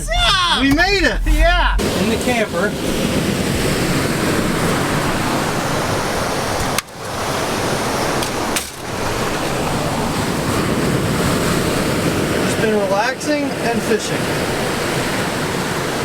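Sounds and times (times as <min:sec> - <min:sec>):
wind on microphone: 0:00.0 - 0:12.5
ocean surf: 0:00.0 - 0:16.0.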